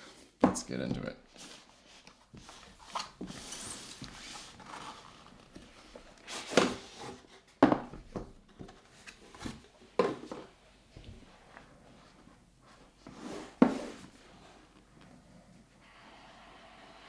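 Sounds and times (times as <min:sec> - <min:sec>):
cardboard and paper rustling: 0:00.2 - 0:12.1.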